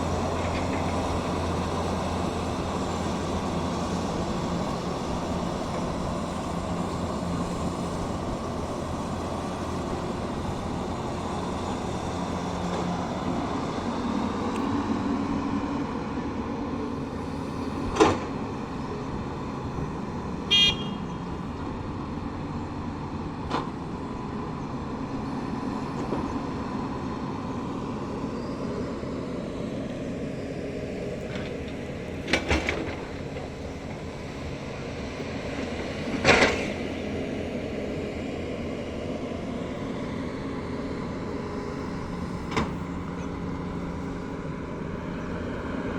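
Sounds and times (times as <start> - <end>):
excavator diesel engine running: 0.0 - 45.9
short horn beep: 20.5 - 21.3.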